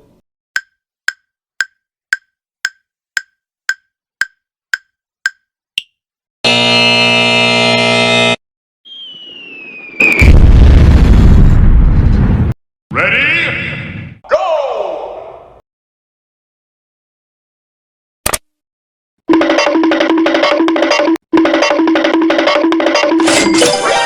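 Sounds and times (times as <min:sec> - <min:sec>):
countdown clock ticking: 0:00.6 - 0:05.9, 0:19.3 - 0:23.3
time-up buzzer: 0:06.4 - 0:08.4, 0:19.3 - 0:24.0
falling whistle: 0:08.8 - 0:10.4.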